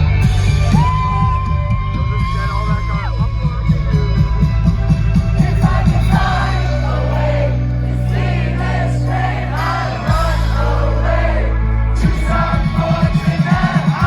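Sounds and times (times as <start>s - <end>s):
live rock band playing loud: 0.0s - 11.0s, 12.0s - 14.0s
drum hits: 12.0s - 14.0s.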